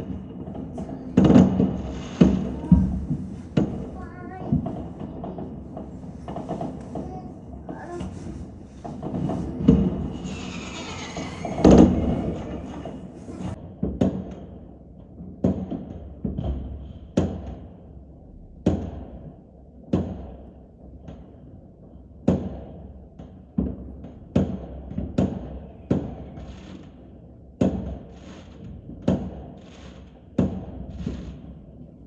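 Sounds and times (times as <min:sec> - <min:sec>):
fireworks and firecrackers banging: 0:00.0 - 0:14.1, 0:27.6 - 0:31.9.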